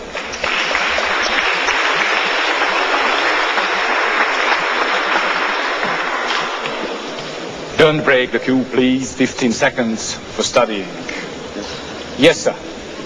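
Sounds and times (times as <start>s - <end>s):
audience applauding: 0.0s - 7.4s.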